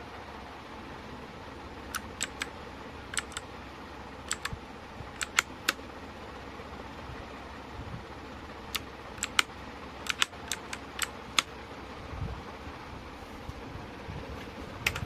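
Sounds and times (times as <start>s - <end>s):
mechanical keyboard clicks: 1.9s - 2.5s, 3.1s - 3.5s, 4.3s - 4.6s, 5.2s - 5.8s, 8.7s - 11.5s.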